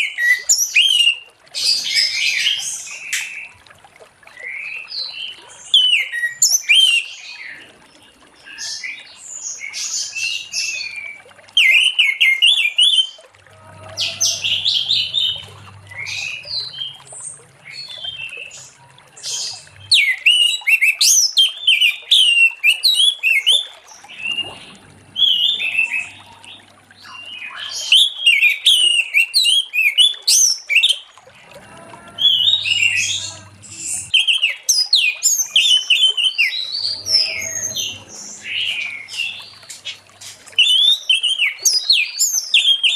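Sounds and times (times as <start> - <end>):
thrush singing: 13.5 - 20.3, 31.4 - 34.8, 36.6 - 41.0.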